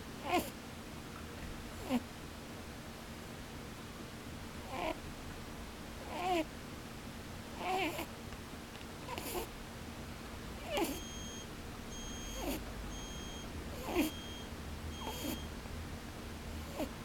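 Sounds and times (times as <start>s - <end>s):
rabbit snoring: 0.2s - 0.5s, 1.8s - 2.0s, 4.7s - 5.0s, 6.0s - 6.5s, 7.6s - 8.1s, 9.1s - 9.5s, 10.6s - 15.5s, 16.5s - 17.0s.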